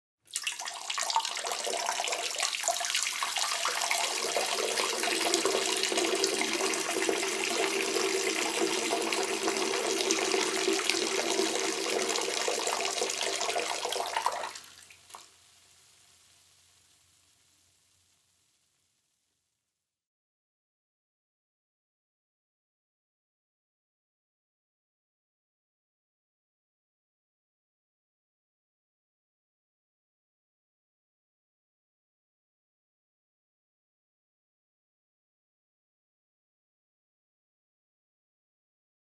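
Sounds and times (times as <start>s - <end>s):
person urinating: 0.3s - 15.3s.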